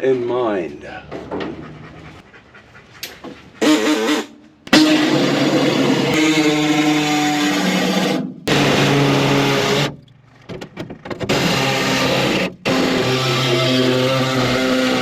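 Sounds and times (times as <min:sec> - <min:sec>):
distorted electric guitar chords: 0:04.7 - 0:06.8, 0:07.5 - 0:10.0.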